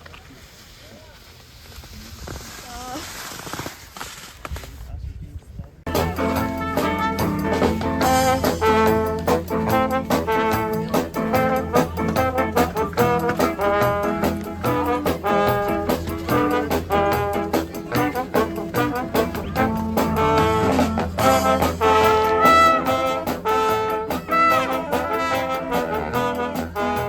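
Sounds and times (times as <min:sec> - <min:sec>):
upbeat brass swing music: 0:05.9 - 0:27.0.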